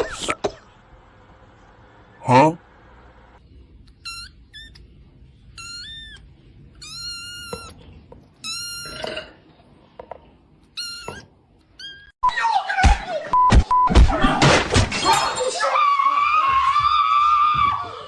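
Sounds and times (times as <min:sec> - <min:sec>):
cat meowing: 0:05.6 - 0:06.2, 0:06.8 - 0:07.8, 0:10.7 - 0:12.2.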